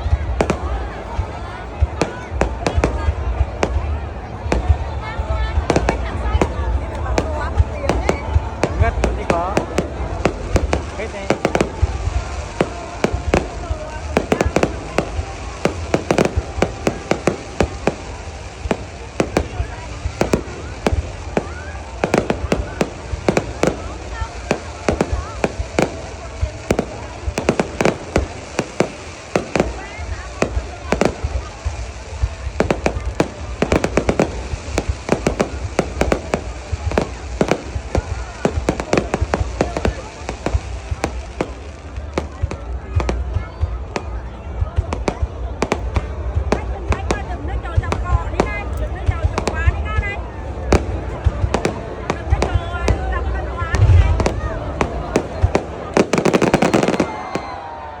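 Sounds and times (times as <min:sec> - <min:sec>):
fireworks bangs: 0:00.0 - 0:58.0
low background noise: 0:00.0 - 0:58.0
low rumble: 0:53.6 - 0:55.7.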